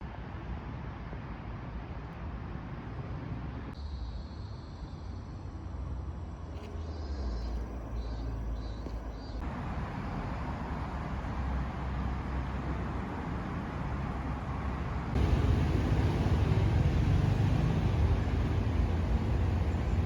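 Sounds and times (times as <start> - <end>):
steady low rumble: 5.2 - 20.0.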